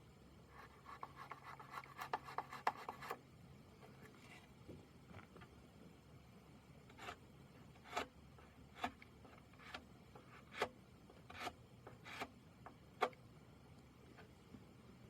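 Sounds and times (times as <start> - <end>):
scraping over carved wood: 6.9 - 12.4.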